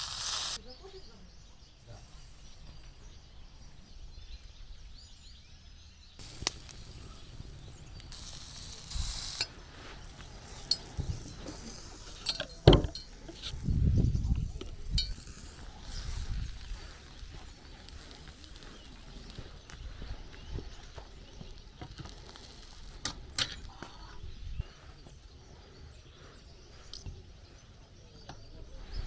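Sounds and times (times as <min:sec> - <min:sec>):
hissing sizzle: 0:00.0 - 0:00.6, 0:06.2 - 0:23.3
metal utensils clinking on pot: 0:10.4 - 0:13.6, 0:14.9 - 0:15.6.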